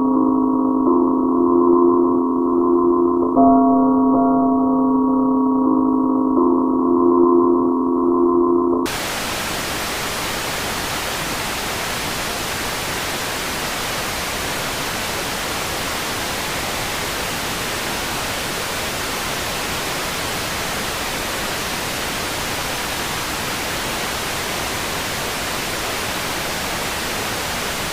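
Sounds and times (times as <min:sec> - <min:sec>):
static hiss: 0:08.9 - 0:27.9.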